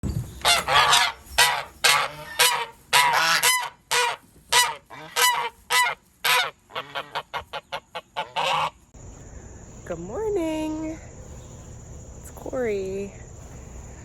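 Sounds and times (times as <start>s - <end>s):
geese honking: 0.4s - 8.9s.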